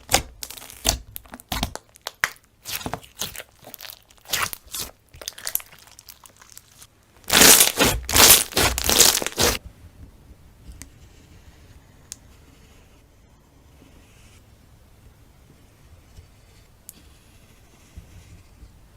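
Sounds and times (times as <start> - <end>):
slime squeezed crackling: 0.0 - 9.6.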